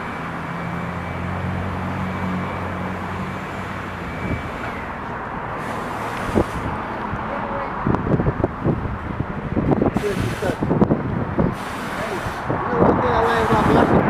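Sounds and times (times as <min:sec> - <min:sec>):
outdoor background noise: 0:00.0 - 0:14.0
vehicle engine humming: 0:00.0 - 0:14.0.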